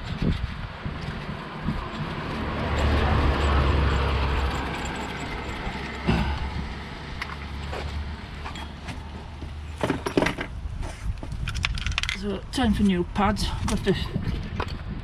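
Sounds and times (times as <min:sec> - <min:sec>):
passing vehicle rumble: 0:00.0 - 0:09.8.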